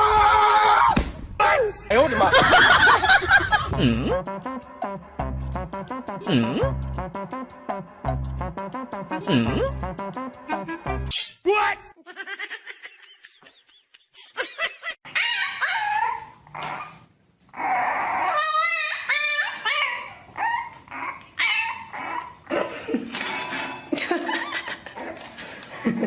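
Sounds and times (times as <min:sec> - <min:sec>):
dog making pitched calls: 0:17.6 - 0:22.4.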